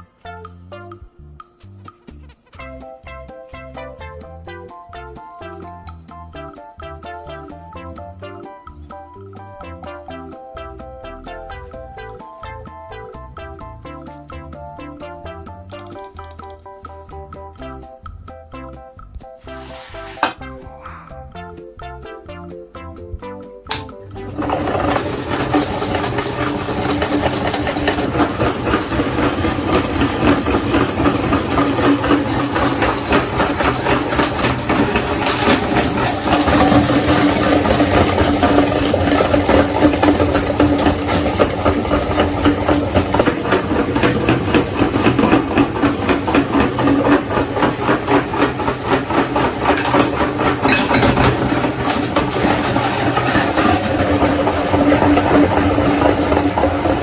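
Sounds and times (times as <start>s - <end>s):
grinder fast rattle: 23.7s - 57.0s
meat grinder motor hum: 24.1s - 57.0s.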